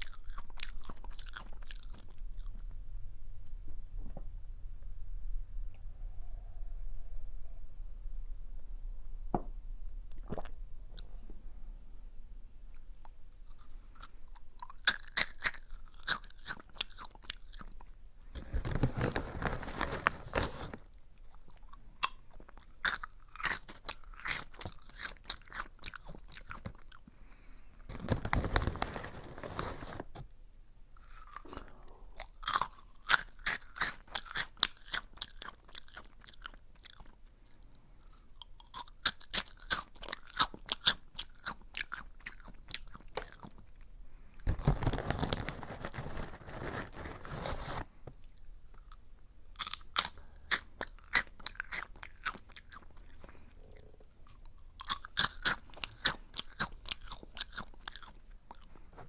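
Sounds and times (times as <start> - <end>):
chewing crunchy snack: 0.0 - 2.7, 12.8 - 27.1, 27.9 - 30.0, 31.0 - 47.4, 49.6 - 59.0.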